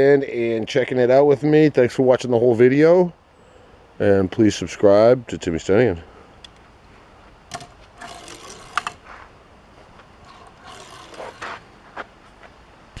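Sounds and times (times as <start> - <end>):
handling scrapes and rubs: 7.5 - 13.0.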